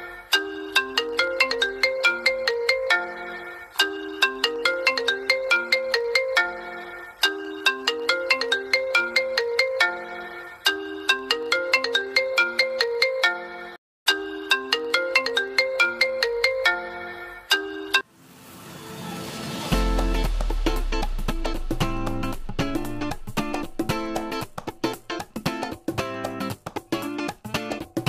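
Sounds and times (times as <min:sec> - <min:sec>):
phone ringtone melody: 0:00.3 - 0:18.1.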